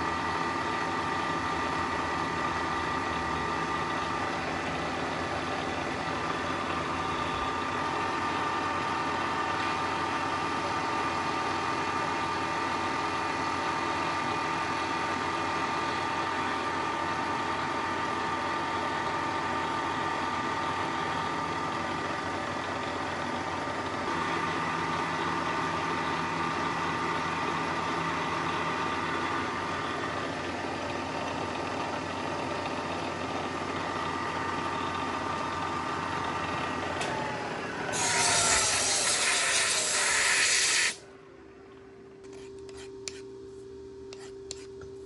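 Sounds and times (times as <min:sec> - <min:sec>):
milling machine motor whine: 0:00.0 - 0:43.2
loud hiss: 0:38.0 - 0:41.0.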